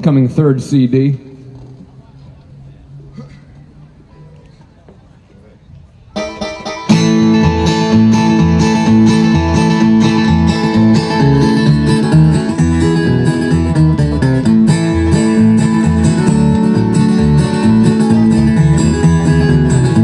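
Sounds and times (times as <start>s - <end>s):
bluegrass band playing: 6.1s - 20.0s
bass line: 6.2s - 20.0s
picked and strummed guitar: 6.2s - 20.0s.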